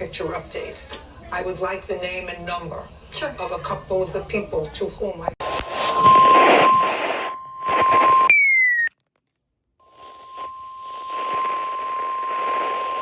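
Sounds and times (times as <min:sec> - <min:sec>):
radio static: 0:05.4 - 0:08.9, 0:10.0 - 0:13.0
short falling chirp: 0:08.3 - 0:09.0.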